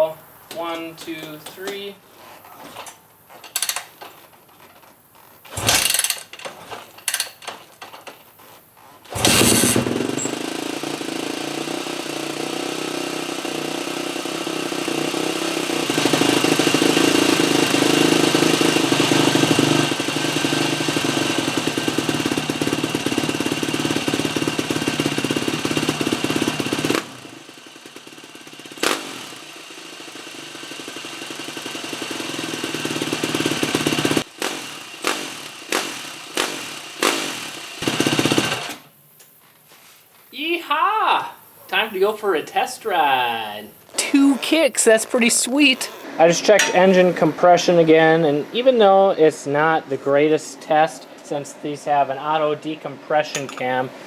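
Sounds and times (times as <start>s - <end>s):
dirt bike engine running: 5.3s - 7.5s, 9.1s - 40.3s, 42.8s - 48.4s
knocks: 46.6s - 46.9s.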